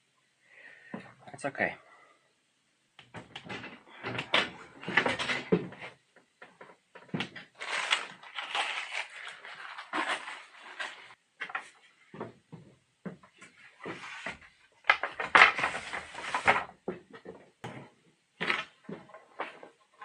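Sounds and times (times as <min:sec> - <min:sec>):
objects knocking and clunking: 0:03.0 - 0:07.8, 0:09.9 - 0:20.0
rustling: 0:07.0 - 0:12.1.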